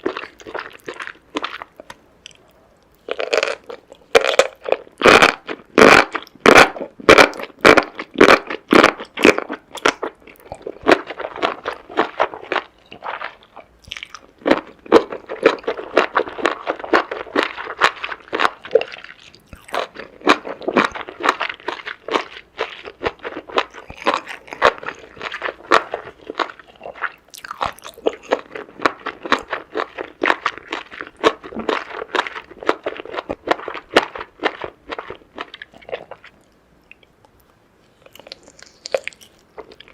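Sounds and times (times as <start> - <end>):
crunching bites of seafood: 0.0 - 36.3
chewing with small crunches: 0.0 - 39.9.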